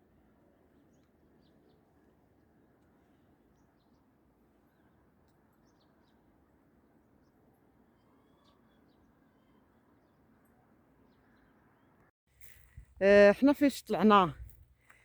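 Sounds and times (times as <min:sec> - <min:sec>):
small birds chirping: 0:02.8 - 0:12.1.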